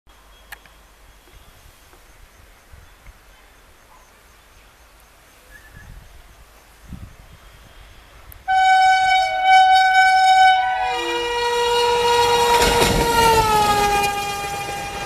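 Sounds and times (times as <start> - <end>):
faint bird chirps: 0.3 - 8.2.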